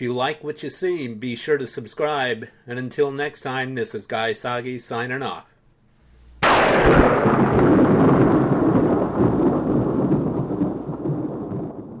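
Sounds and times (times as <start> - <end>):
thunderclap crack and rolling rumble: 6.3 - 12.0.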